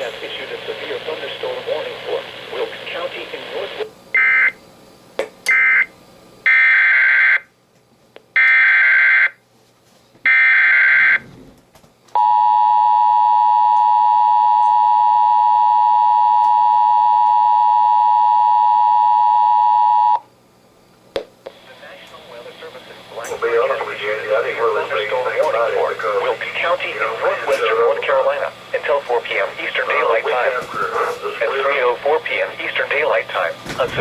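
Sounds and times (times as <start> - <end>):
steady attention tone: 21.5 - 34.0.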